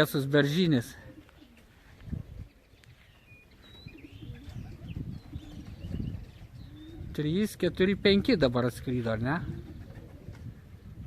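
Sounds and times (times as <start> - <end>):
pigeons cooing softly: 0.0 - 11.0
small birds chirping faintly: 1.0 - 7.5.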